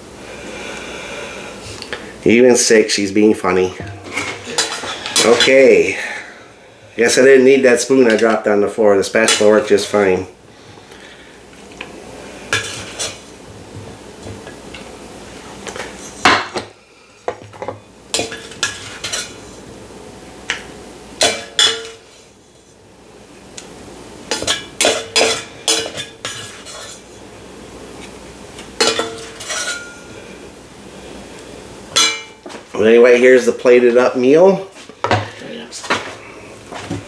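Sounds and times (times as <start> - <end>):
spatula clinking on pot and plate: 17.6 - 19.4, 21.2 - 22.0, 24.3 - 27.0, 28.8 - 30.1, 32.0 - 32.4.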